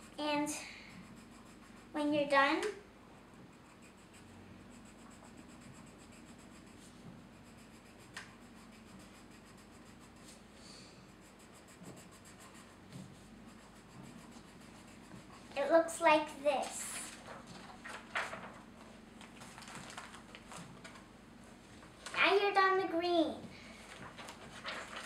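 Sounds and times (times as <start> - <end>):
pencil crayon scratching on paper: 0.8 - 2.3, 3.3 - 10.5, 11.1 - 16.2.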